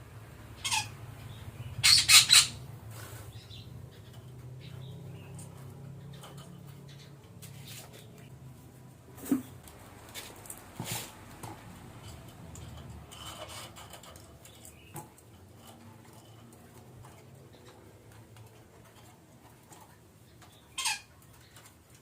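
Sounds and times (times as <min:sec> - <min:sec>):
parakeet squawking: 0:00.6 - 0:01.0, 0:01.7 - 0:02.7, 0:20.7 - 0:21.1.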